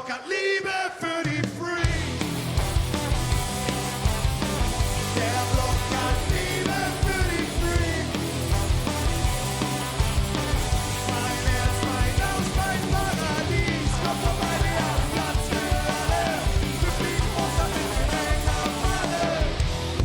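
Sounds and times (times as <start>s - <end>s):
ska-punk band playing live: 1.2s - 20.0s
person singing: 5.2s - 8.2s, 11.1s - 19.6s.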